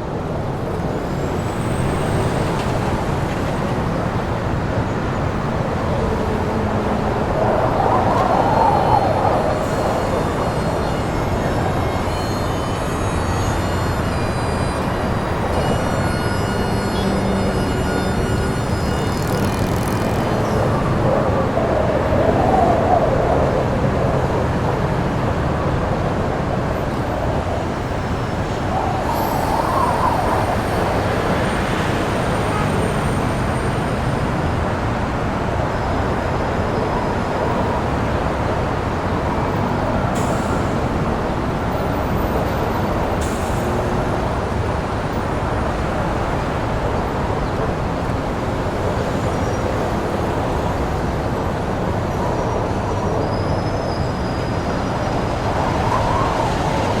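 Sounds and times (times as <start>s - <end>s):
wind rush: 0.0s - 16.0s, 16.6s - 57.0s.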